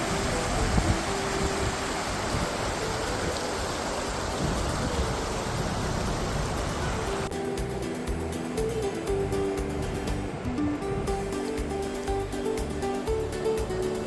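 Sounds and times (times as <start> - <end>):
rushing river water: 0.0 - 14.0
background music: 7.0 - 14.0.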